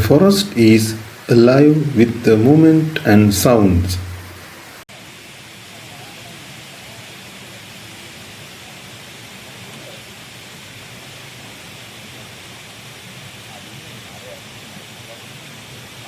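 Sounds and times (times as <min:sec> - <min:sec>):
rainforest hiss: 0:00.0 - 0:16.0.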